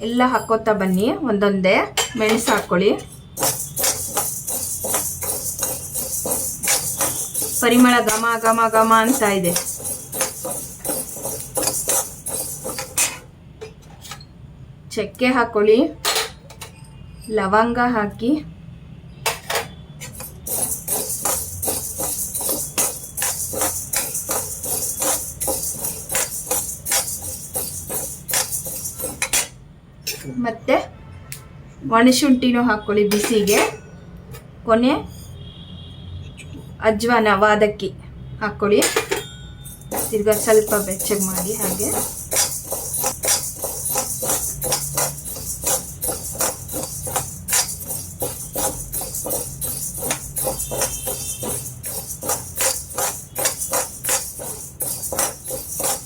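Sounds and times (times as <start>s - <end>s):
dry grains stirred in a pan: 2.3s - 13.2s, 20.0s - 29.6s, 39.8s - 56.0s.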